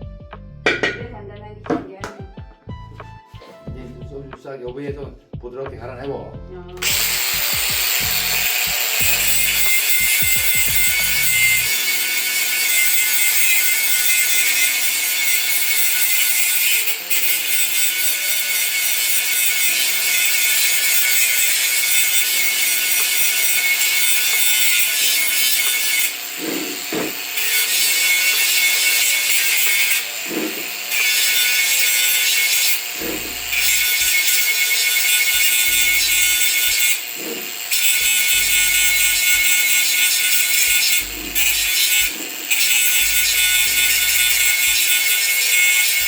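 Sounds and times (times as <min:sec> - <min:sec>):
soft background music: 0:00.0 - 0:34.2
power grinder grinding metal: 0:06.8 - 0:46.0.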